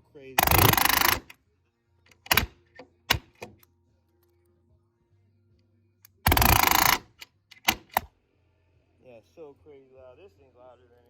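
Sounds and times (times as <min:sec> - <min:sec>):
faint background music: 0:00.0 - 0:11.0
palm nailer hammering nails: 0:00.4 - 0:01.3, 0:02.2 - 0:03.6, 0:06.3 - 0:08.0.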